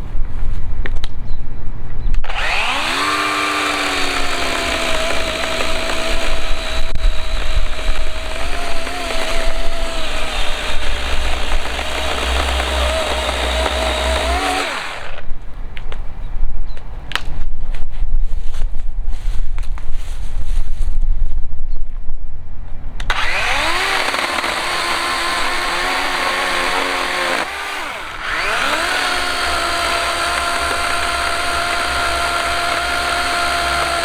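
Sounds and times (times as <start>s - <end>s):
electric chainsaw cutting log: 2.2s - 15.4s, 23.1s - 34.0s.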